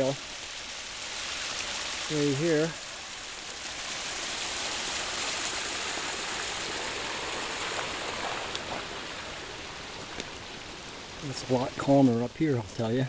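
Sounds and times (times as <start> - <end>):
brook water rushing: 0.0 - 13.0.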